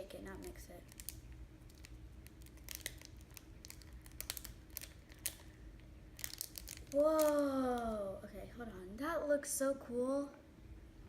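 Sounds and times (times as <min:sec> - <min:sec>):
faint steady hum: 0:00.0 - 0:11.0
powder packet crinkling: 0:00.4 - 0:08.0.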